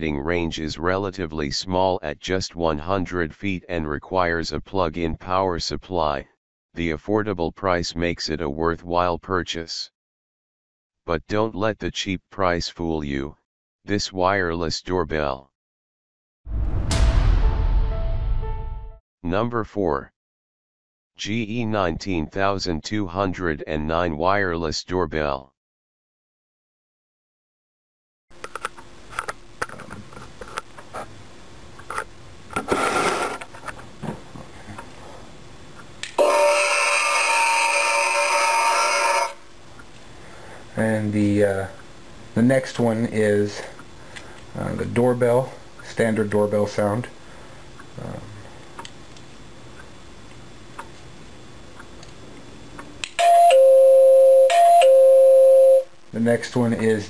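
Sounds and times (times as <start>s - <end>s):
click: 35.8s - 36.2s, 48.8s - 50.9s, 51.8s - 52.2s, 52.8s - 53.2s
electronic doorbell chime: 36.2s - 39.3s, 53.2s - 55.9s
doorbell chime ding-dong: 53.2s - 55.8s.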